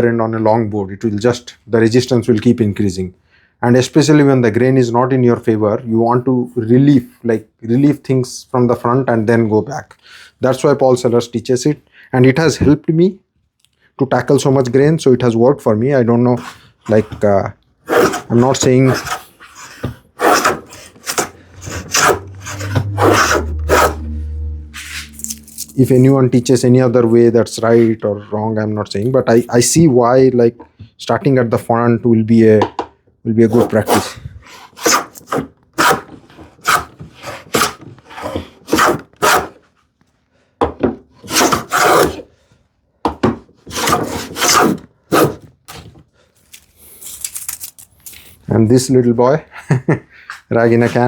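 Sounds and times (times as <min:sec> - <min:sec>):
plane rasping through wood: 0:17.9 - 0:25.2, 0:34.6 - 0:39.6, 0:41.2 - 0:42.2, 0:43.6 - 0:45.4.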